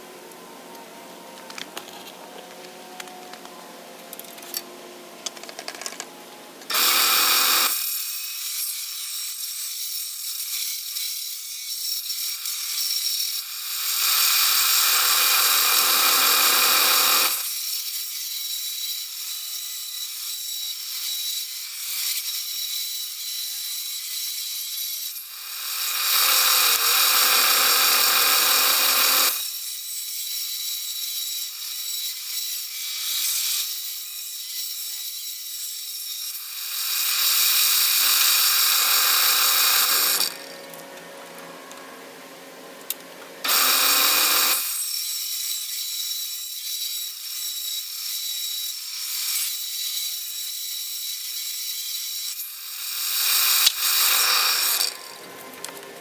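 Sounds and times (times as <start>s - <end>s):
power woodworking tool cutting: 6.7s - 9.4s, 12.0s - 23.4s, 24.0s - 41.6s, 43.4s - 56.0s.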